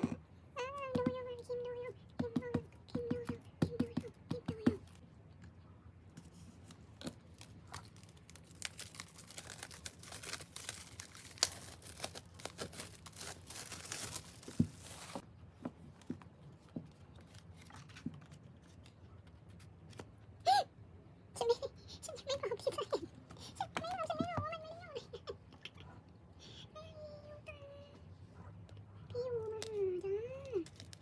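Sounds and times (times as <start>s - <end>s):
packaging tearing and crinkling: 7.2s - 15.2s.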